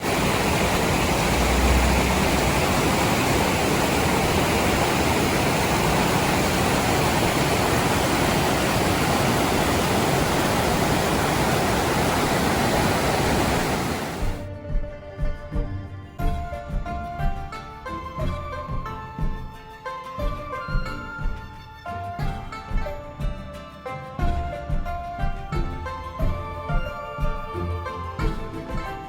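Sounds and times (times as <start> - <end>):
mountain stream rushing: 0.0 - 14.4
music: 14.2 - 29.0.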